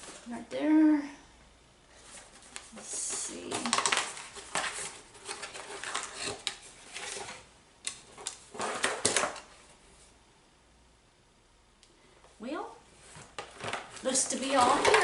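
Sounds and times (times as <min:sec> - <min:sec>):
packaging rustling: 0:02.0 - 0:09.5, 0:13.0 - 0:15.0.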